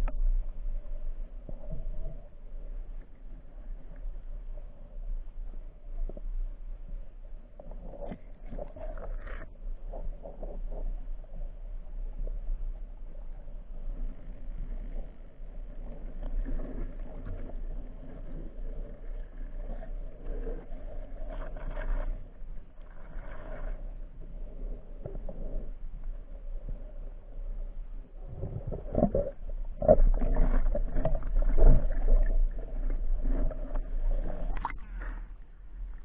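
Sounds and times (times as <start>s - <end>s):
low underwater rumble: 0.0s - 36.0s
water swishing and scraping: 0.0s - 36.0s.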